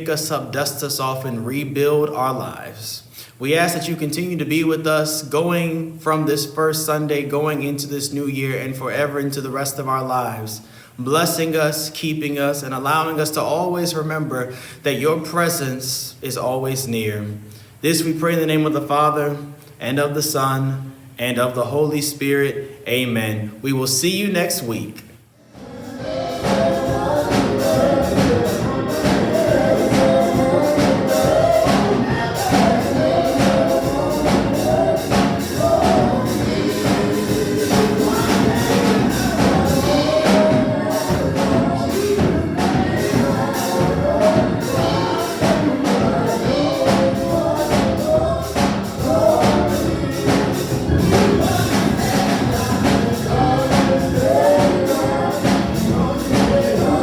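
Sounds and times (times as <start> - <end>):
choir singing gospel: 25.4 - 57.0
percussion beat: 25.6 - 57.0.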